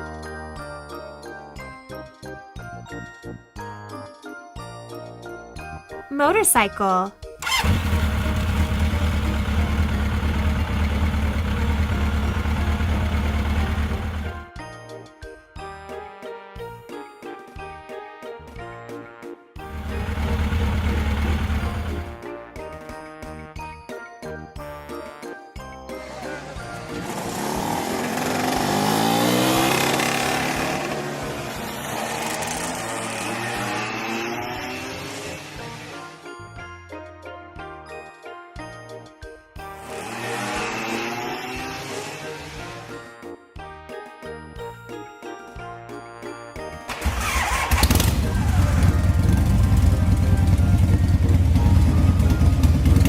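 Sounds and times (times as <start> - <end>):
tinkly children's jingle: 0.0 - 7.3, 14.4 - 19.1, 22.3 - 27.1, 33.3 - 46.9
motorcycle engine idling: 7.4 - 14.5, 19.7 - 22.2, 47.3 - 53.0.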